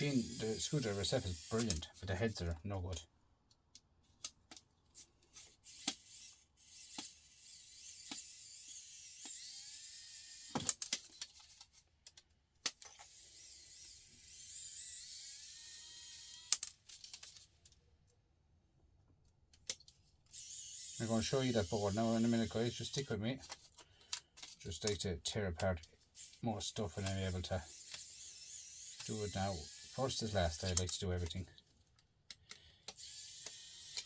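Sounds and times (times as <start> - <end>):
clicks and knocks of screws: 10.5 - 13.1
electric screwdriver whining: 20.3 - 23.1, 27.0 - 30.9, 32.9 - 34.0.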